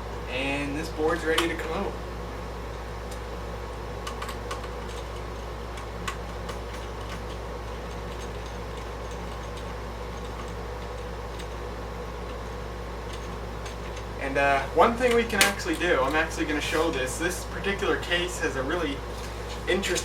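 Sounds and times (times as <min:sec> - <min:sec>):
steady low hum: 0:00.0 - 0:20.0
hands clicking computer parts: 0:04.0 - 0:11.7, 0:13.1 - 0:14.1, 0:14.9 - 0:17.0.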